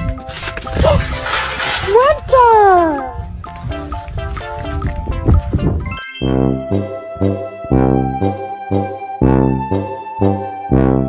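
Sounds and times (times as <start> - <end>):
music with bass-heavy beat: 0.0 - 6.0.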